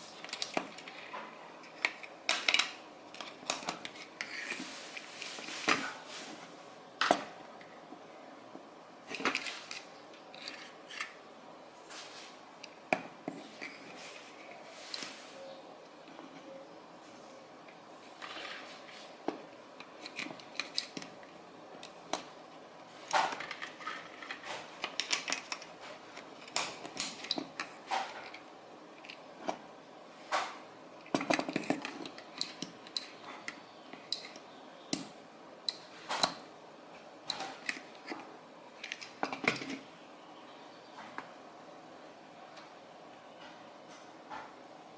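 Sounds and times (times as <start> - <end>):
plastic and metal parts clicking: 23.1 - 28.4.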